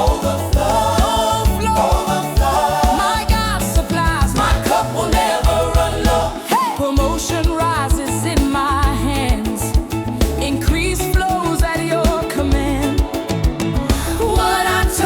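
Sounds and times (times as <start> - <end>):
gospel music with singing: 0.0 - 15.0.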